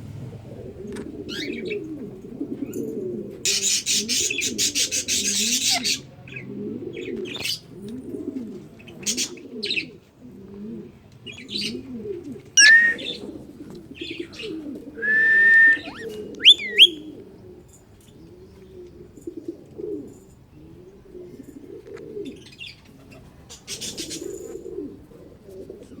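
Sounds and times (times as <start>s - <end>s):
pigeons cooing: 0.5s - 26.0s
sharp whistled bird calls: 12.6s - 13.1s, 15.0s - 17.0s.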